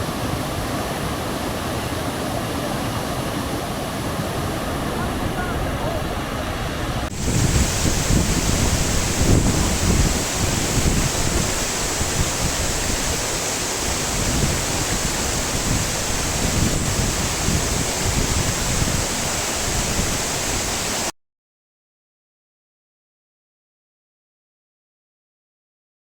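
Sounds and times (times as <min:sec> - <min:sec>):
heavy rain falling: 0:07.0 - 0:21.1.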